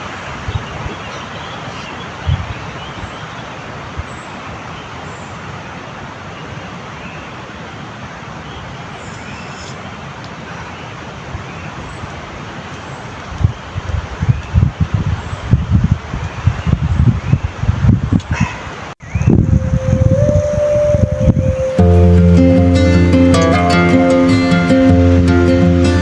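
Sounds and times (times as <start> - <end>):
wind buffeting microphone: 0.0 - 1.2, 2.1 - 3.2, 13.2 - 26.0
stormy wind through trees: 0.0 - 26.0.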